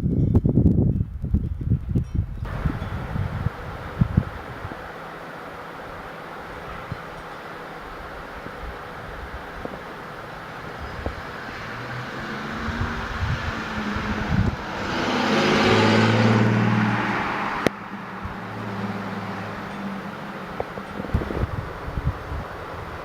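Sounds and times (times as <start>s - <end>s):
vehicle passing by: 10.6s - 22.4s.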